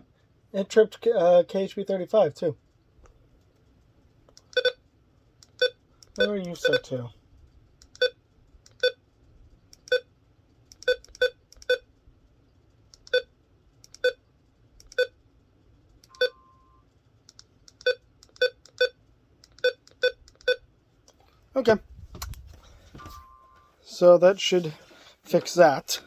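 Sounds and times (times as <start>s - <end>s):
faint beep: 16.1s - 16.8s, 23.0s - 23.7s.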